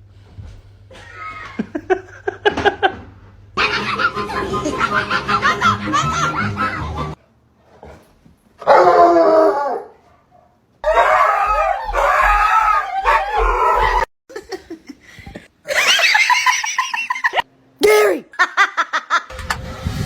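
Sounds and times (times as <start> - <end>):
dog howling: 8.6 - 10.0, 10.8 - 14.1.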